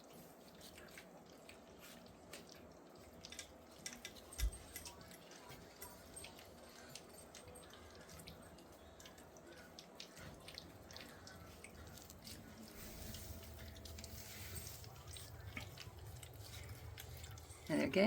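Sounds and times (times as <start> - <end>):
puppies lapping food: 0.0 - 18.0.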